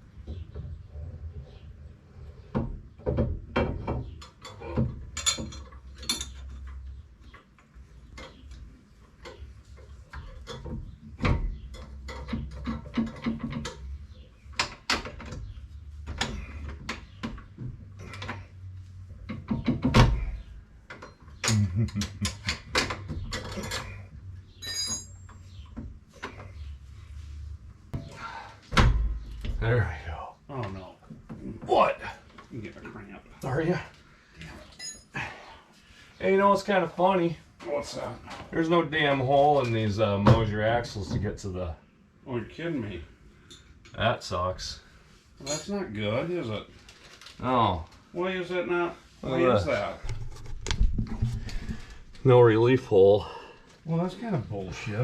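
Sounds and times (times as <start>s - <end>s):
metal tools clinking and clanking: 4.2s - 6.8s, 22.2s - 24.0s, 24.6s - 25.6s, 45.4s - 45.8s.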